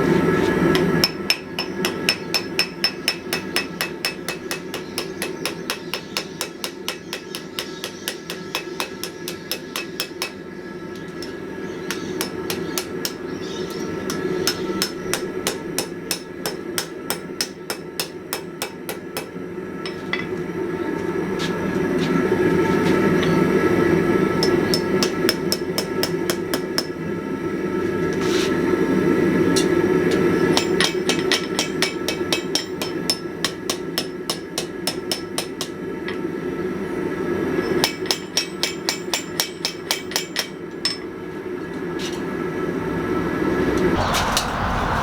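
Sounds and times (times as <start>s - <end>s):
hammer striking steel on anvil: 0.7s - 10.5s, 11.1s - 20.4s, 24.4s - 27.0s, 29.5s - 36.2s, 37.6s - 41.1s
steady roar: 43.3s - 45.0s.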